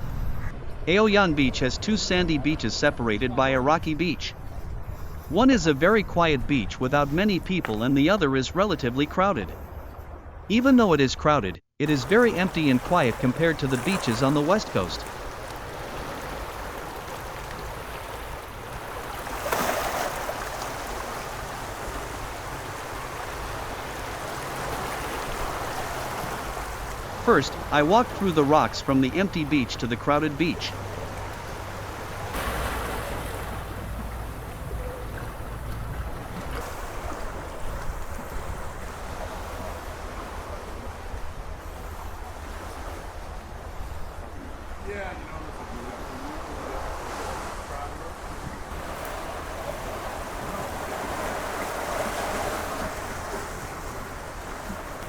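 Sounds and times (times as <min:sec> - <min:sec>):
wind rumble on microphone: 0:00.0 - 0:00.9, 0:04.4 - 0:05.3
wave washing in: 0:11.8 - 0:43.2, 0:45.0 - 0:55.0
small waves lapping on beach: 0:11.8 - 0:55.0.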